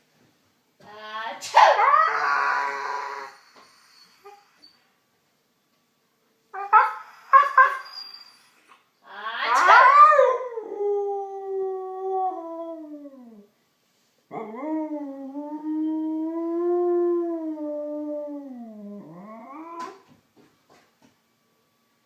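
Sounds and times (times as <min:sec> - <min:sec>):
dog howling: 0:01.6 - 0:03.6.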